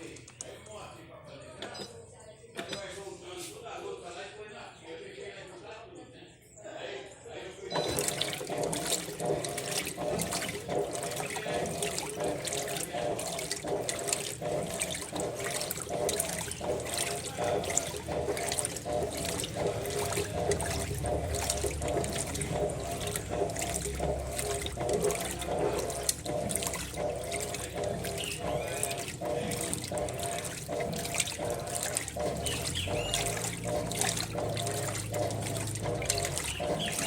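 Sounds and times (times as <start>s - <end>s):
washing machine water sloshing: 7.7s - 37.0s.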